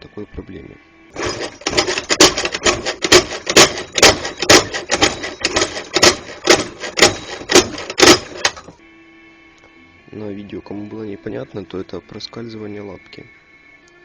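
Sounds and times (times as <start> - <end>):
kick-starter clacking and rattling: 1.2 - 8.8.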